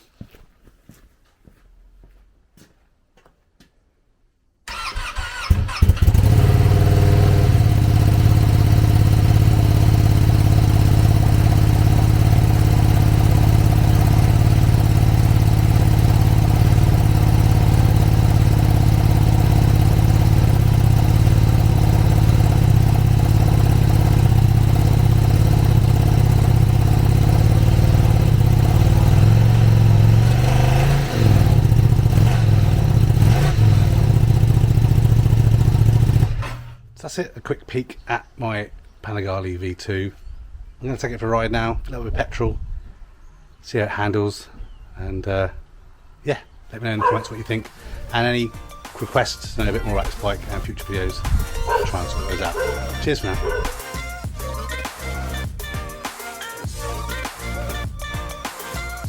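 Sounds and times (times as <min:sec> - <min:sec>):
engine throttle blips: 0:04.7 - 0:37.0, 0:47.0 - 0:53.8
motorcycle engine starting and idling: 0:04.7 - 0:37.0, 0:47.0 - 0:55.5.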